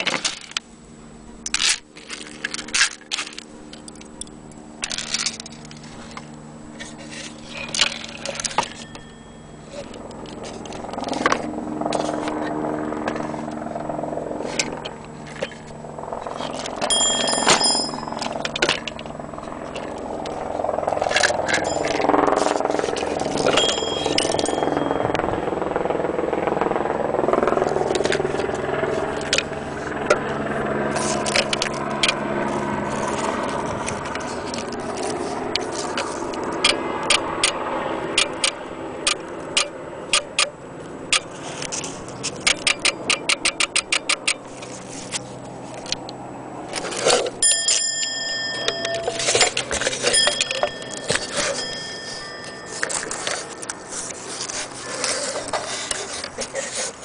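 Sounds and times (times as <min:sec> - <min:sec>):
rubbing and scraping: 0:05.0 - 0:08.8, 0:44.4 - 0:45.9, 0:49.0 - 0:57.0
alarm clock bell ringing: 0:08.4 - 0:09.9, 0:16.8 - 0:18.6, 0:21.4 - 0:25.9, 0:47.4 - 0:54.0
sharp mechanical clicks: 0:36.4 - 0:41.4, 0:42.2 - 0:44.5.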